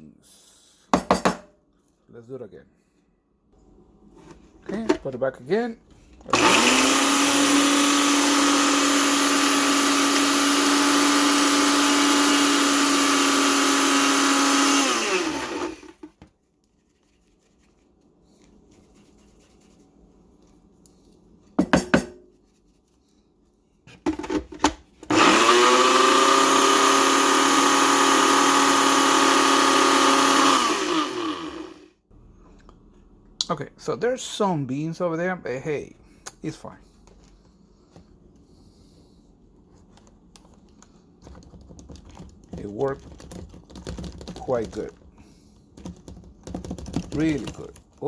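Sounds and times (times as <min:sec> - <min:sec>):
blender clicks: 0:06.3 - 0:16.1, 0:25.0 - 0:31.8
blender grinding coffee beans: 0:06.3 - 0:16.1, 0:25.0 - 0:31.9, 0:45.8 - 0:47.8.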